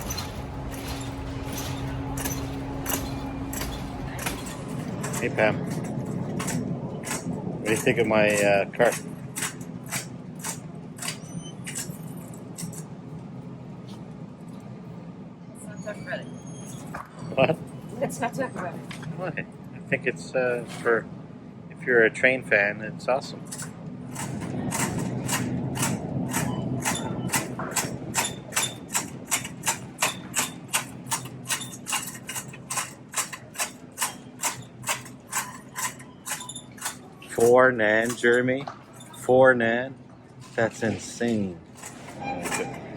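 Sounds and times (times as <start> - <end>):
low rolling rumble: 0.0 - 10.4
shopping cart wheels clunking: 0.0 - 13.0, 23.4 - 39.5, 40.3 - 42.9.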